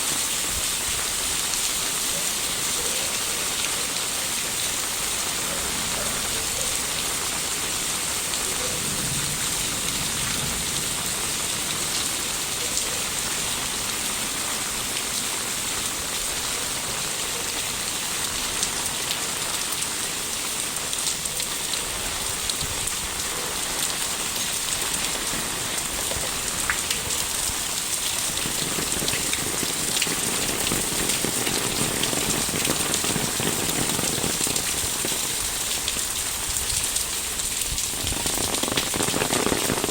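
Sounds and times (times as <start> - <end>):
low full rain patter: 0.0 - 39.9
steady rain hiss: 0.0 - 39.9
single raindrops ticking: 28.0 - 36.0, 37.9 - 39.9.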